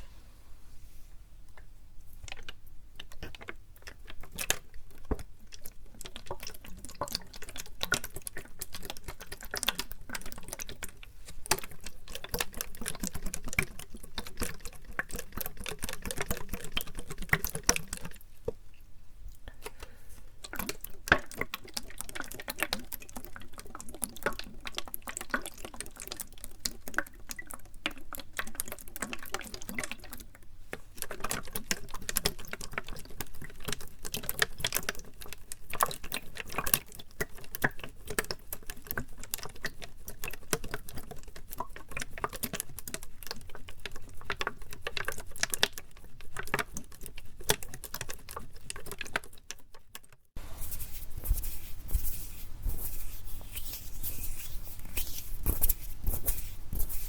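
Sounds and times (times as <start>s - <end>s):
hand sounds with low rumble: 50.4s - 57.0s.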